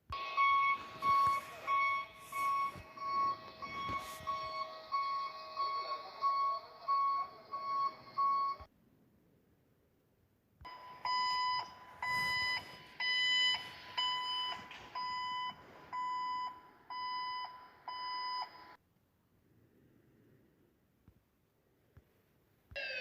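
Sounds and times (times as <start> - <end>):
background noise: 0.0 - 23.0
vehicle warning beeper: 0.2 - 8.7, 10.7 - 18.8.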